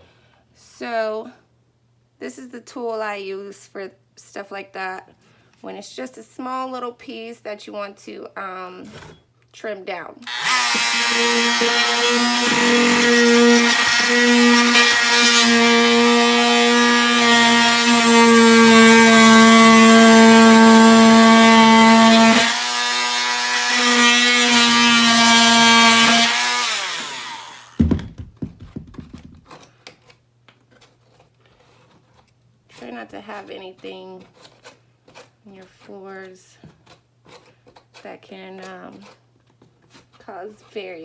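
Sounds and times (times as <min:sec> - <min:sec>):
rotary tool winding down: 0:10.3 - 0:27.8
rotary tool whining: 0:10.3 - 0:27.9
knock: 0:27.8 - 0:29.5.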